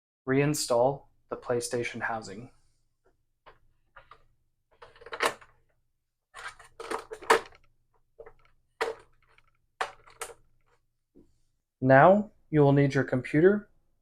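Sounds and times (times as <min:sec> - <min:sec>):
plastic clicks and knocks: 0:06.6 - 0:10.8.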